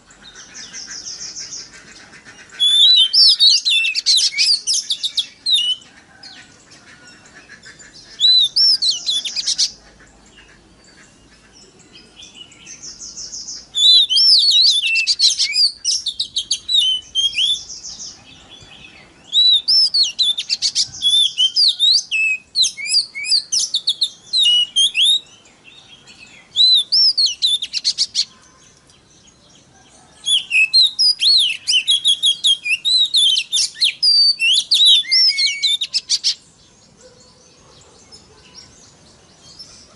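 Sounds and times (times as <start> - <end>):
bird singing rapid whistles: 2.6 - 5.8, 8.1 - 9.8, 13.5 - 18.0, 19.2 - 25.3, 26.5 - 28.3, 30.2 - 36.4.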